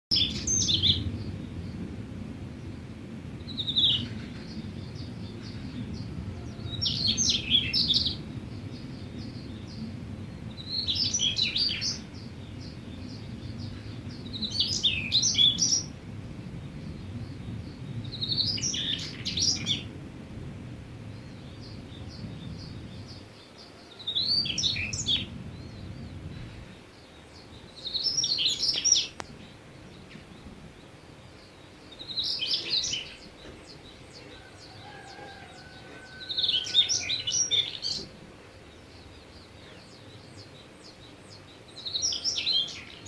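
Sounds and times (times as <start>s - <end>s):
bird chirping: 3.4s - 15.9s, 16.6s - 19.9s, 21.1s - 43.0s.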